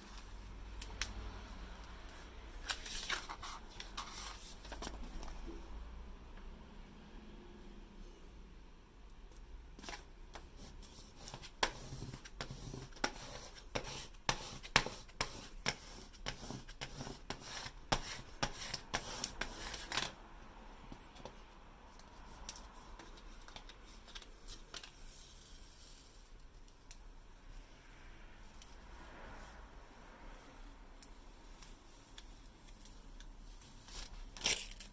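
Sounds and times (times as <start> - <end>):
vinyl sticker sheet crackling: 1.8 - 5.6.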